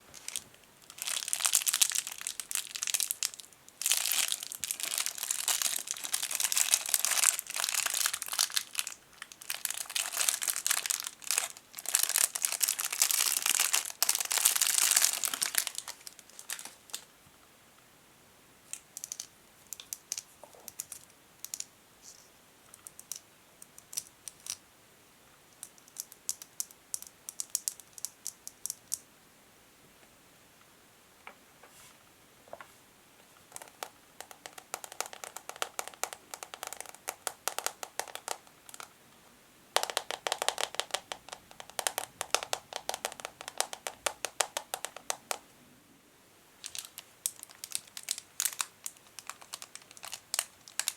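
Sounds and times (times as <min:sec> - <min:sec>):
plastic bag crinkling: 0:00.0 - 0:17.1, 0:46.6 - 0:50.9.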